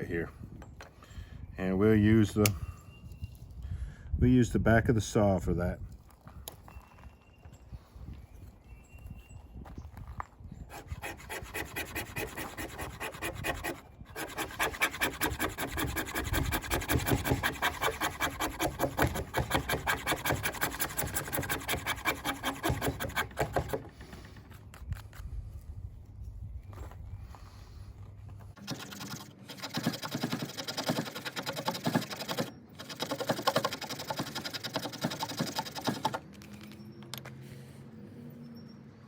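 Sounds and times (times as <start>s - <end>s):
knife scraping wood: 10.7s - 25.4s, 28.6s - 36.2s.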